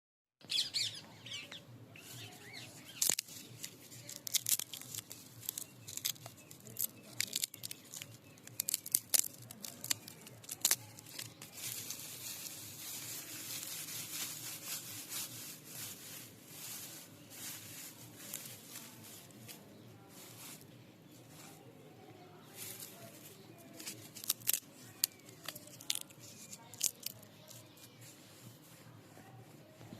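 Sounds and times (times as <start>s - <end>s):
plant stems snapping: 2.8s - 12.0s, 23.8s - 27.3s.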